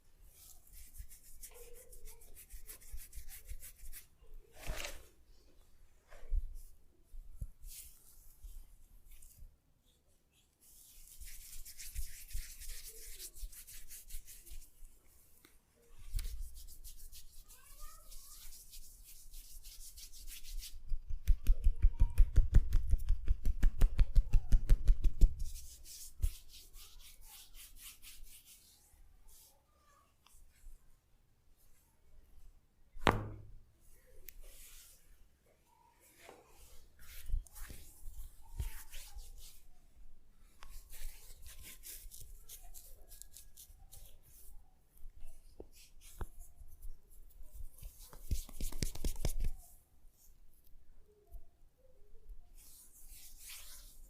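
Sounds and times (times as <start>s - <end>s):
hands rubbing oiled skin: 0.3s - 4.1s, 7.4s - 29.5s, 36.6s - 39.7s, 40.6s - 44.5s, 45.4s - 49.7s, 52.6s - 54.0s.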